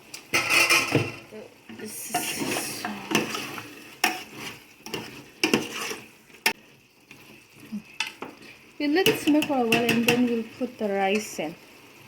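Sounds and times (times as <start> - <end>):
spoon scraping cooking pot: 2.1 - 7.3.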